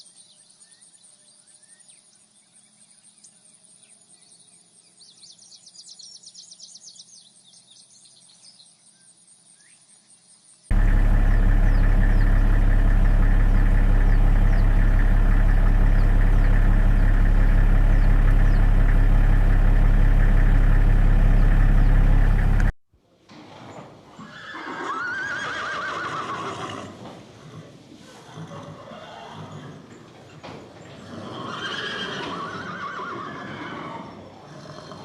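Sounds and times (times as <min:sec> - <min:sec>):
loud low-pitched drone: 0:10.7 - 0:22.7
horse whinnying: 0:24.2 - 0:30.0, 0:31.0 - 0:35.0.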